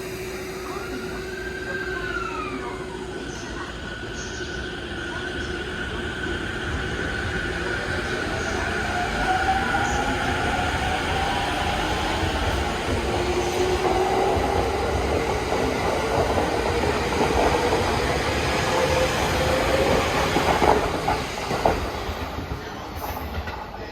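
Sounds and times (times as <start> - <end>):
electric train motor whine: 0.0 - 2.8
train wheels rumbling: 0.0 - 23.9.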